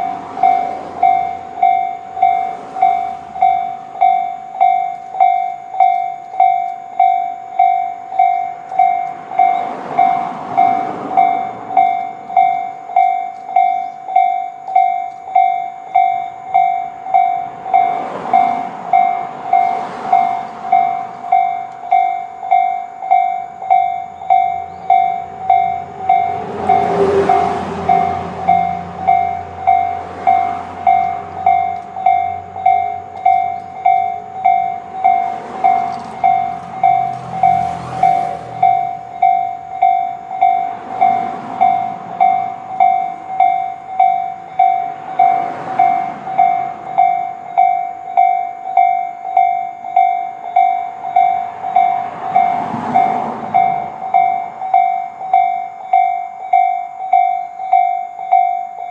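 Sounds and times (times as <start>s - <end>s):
level crossing alarm dinging: 0.0s - 58.9s
passing train running noise: 0.0s - 58.9s.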